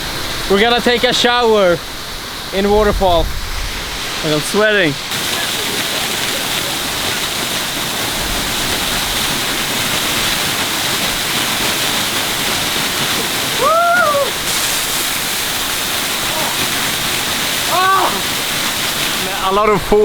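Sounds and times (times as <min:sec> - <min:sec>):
waterfall rushing: 0:00.0 - 0:20.0
person whooping: 0:13.5 - 0:14.5, 0:16.2 - 0:16.6, 0:17.6 - 0:18.3.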